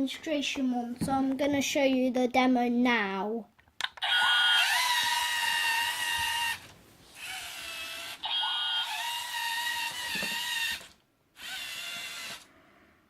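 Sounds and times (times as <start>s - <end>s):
robot electric motors whining: 4.0s - 12.5s.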